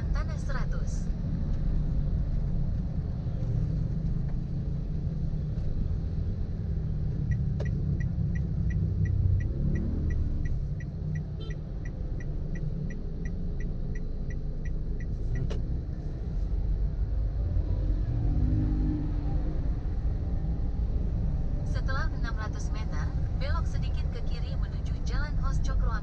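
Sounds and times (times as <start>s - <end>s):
car road and engine rumble: 0.0s - 26.0s
turn signal ticking: 1.2s - 16.8s.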